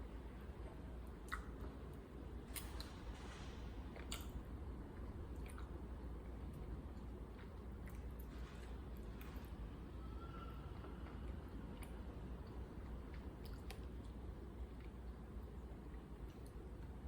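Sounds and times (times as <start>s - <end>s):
steady low hum: 0.0s - 17.0s
wet mouth clicks and smacks: 1.3s - 1.6s, 4.0s - 4.4s, 11.8s - 14.2s
person chewing food: 5.0s - 6.0s, 10.8s - 16.9s.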